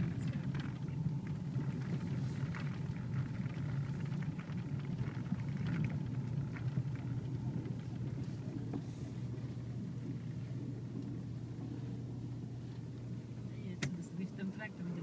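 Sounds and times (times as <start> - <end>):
faint ticks and patter: 0.0 - 11.3
vehicle engine rumble: 0.0 - 15.0.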